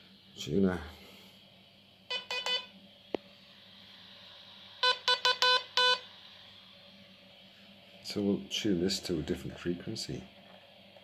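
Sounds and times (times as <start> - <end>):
morse code beeps: 2.1 - 2.7, 4.8 - 6.0.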